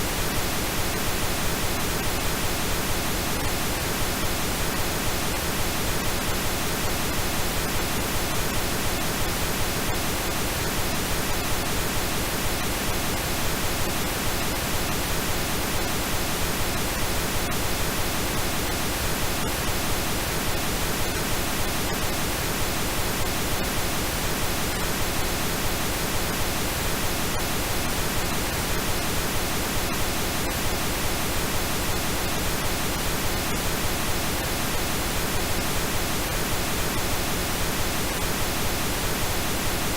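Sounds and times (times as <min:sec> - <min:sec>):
steady pink noise hiss: 0:00.0 - 0:39.9.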